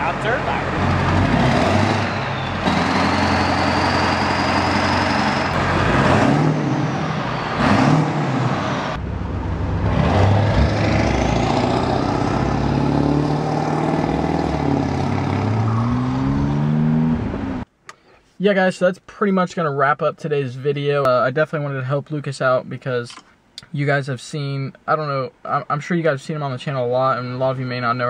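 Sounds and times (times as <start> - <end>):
diesel engine accelerating: 0.0 - 17.6
turbo whistle: 2.0 - 5.5.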